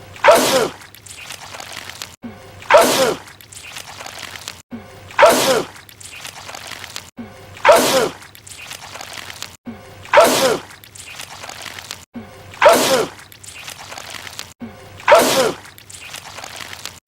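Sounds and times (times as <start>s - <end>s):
man sneezing loudly: 15.1s - 15.6s.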